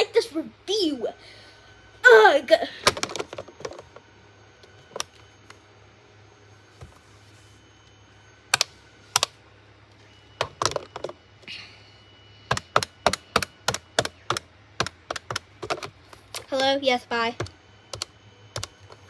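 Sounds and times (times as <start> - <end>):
phone keypad buttons clicking: 8.6 - 9.3, 12.5 - 16.0, 17.4 - 19.0.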